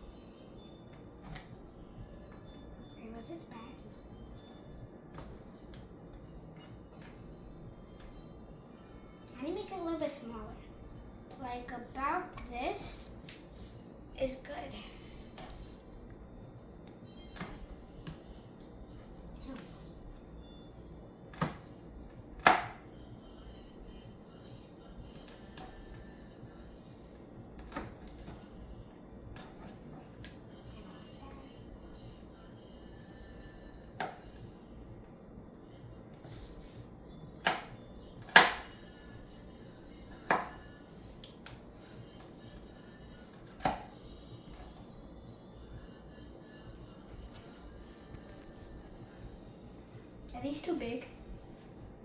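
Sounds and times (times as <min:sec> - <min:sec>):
knife chopping on cutting board: 0:22.4 - 0:22.8, 0:37.4 - 0:38.7, 0:40.2 - 0:40.6, 0:43.6 - 0:43.9.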